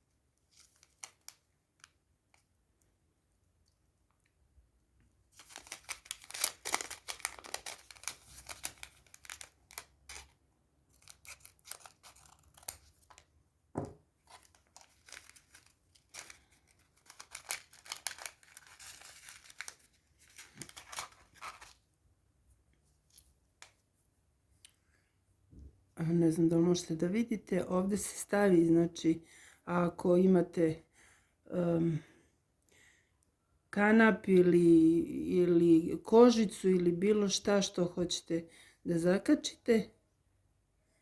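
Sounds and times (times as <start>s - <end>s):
packaging bag rustling and tearing: 0.5s - 1.9s, 5.3s - 13.3s, 14.2s - 21.9s.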